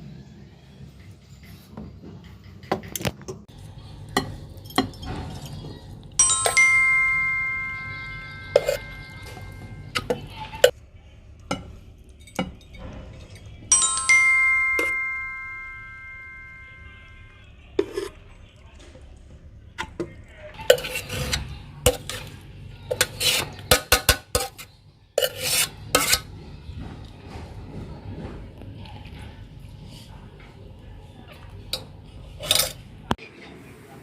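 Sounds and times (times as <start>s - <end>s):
bell-like chime ringing: 6.2s - 10.0s, 13.7s - 17.5s.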